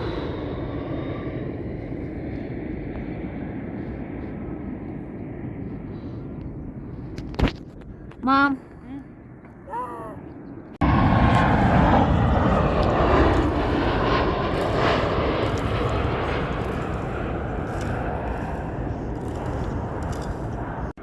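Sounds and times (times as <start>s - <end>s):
jet airliner engines passing: 0.0s - 21.0s.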